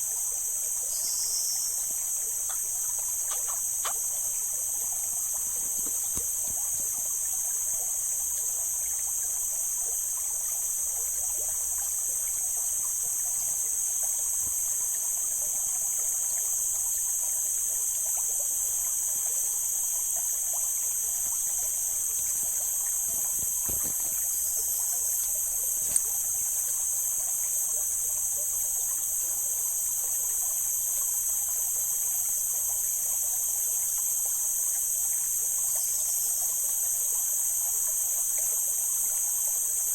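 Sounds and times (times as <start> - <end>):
high-pitched insect drone: 0.0 - 39.9
stream flowing over rocks: 2.0 - 30.5.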